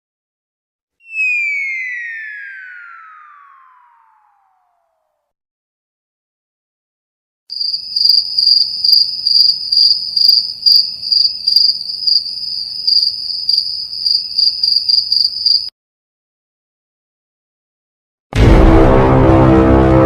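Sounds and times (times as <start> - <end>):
crickets chirping: 7.5 - 15.7.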